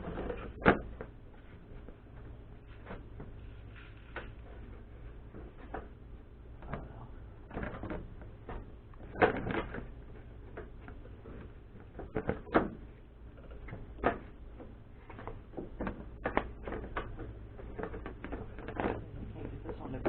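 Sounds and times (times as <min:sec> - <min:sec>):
plastic parts clicking and knocking: 0:06.6 - 0:20.0.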